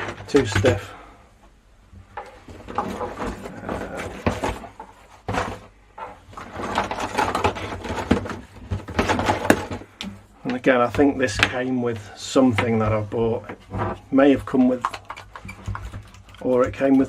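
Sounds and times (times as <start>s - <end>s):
plastic joystick clicking and rubbing: 13.6s - 17.0s.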